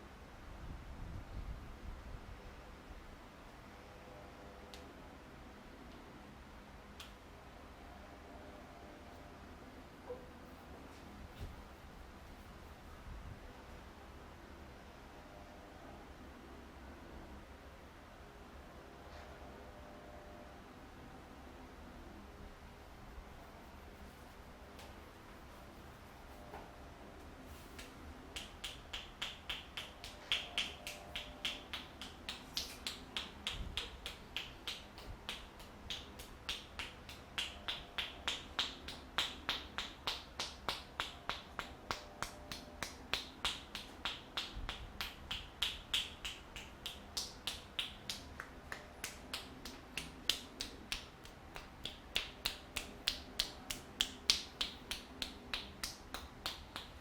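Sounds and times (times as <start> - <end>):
hands slapping body in massage: 27.6 - 57.0.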